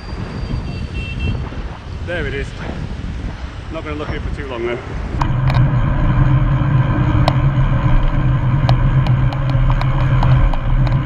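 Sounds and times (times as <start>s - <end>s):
road traffic rumble: 0.0s - 11.0s
sharp ticks: 5.2s - 11.0s.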